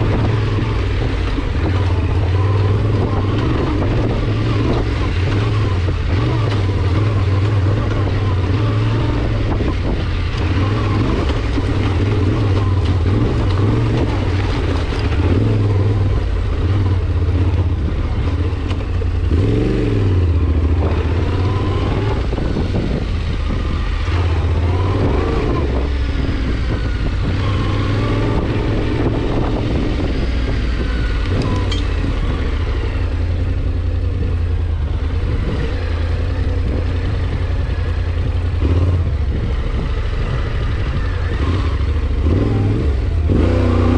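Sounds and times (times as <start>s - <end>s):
vehicle engine droning: 0.0s - 43.9s.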